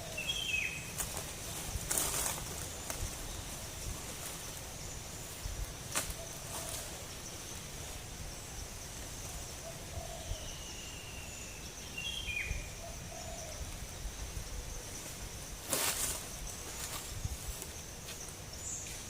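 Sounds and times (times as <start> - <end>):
bird calling: 0.0 - 1.0
high insect drone: 0.0 - 19.0.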